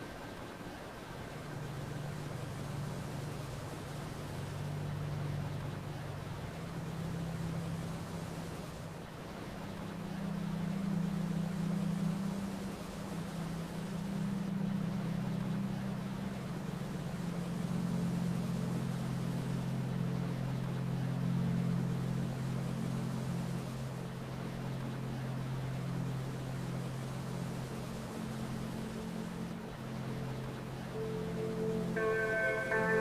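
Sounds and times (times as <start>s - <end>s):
low ambient drone: 0.0s - 33.0s
waterfall rushing: 31.0s - 33.0s.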